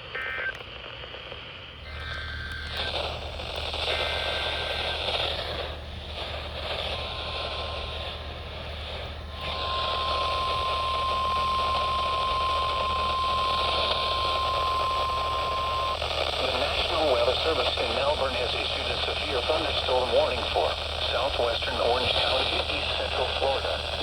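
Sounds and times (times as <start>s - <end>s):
static hiss: 0.0s - 24.0s
warning alarm tone: 6.3s - 16.0s.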